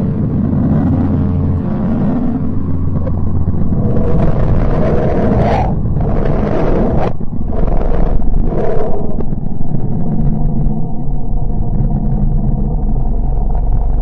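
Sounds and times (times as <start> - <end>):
rising whoosh: 0.0 - 9.3
deep rumbling drone: 0.0 - 14.0.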